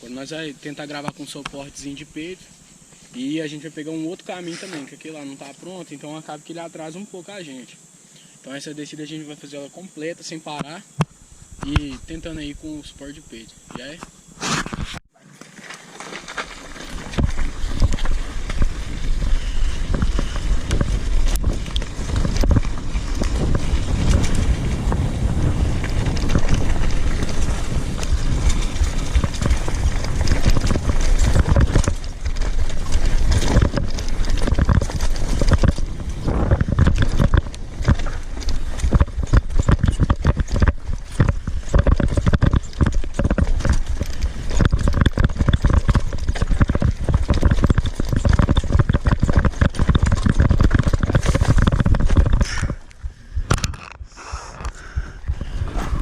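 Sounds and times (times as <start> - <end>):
mountain bike rumble: 0.0 - 7.0, 10.9 - 56.0
bike clattering over ground: 14.6 - 52.9.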